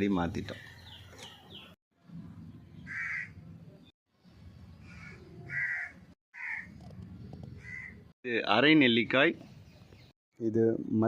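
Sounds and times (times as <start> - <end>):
crows cawing: 2.9 - 3.4, 4.8 - 6.8, 7.6 - 8.0.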